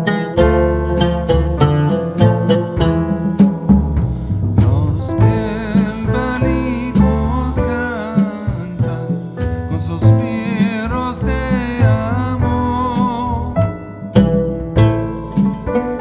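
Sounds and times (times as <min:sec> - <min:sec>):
guitar music: 0:00.0 - 0:16.0
wavering melody line: 0:00.4 - 0:10.9.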